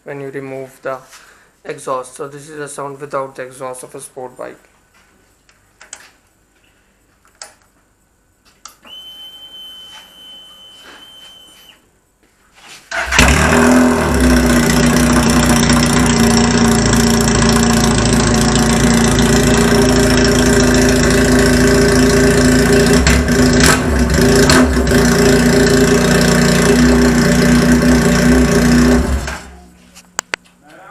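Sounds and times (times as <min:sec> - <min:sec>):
high steady whine: 0:08.7 - 0:12.0
motorcycle engine idling loudly: 0:14.0 - 0:29.3.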